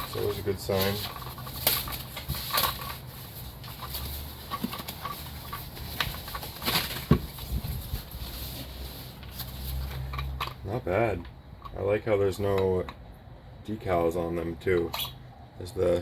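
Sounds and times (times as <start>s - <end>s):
packaging rustling and knocking: 0.0s - 10.1s.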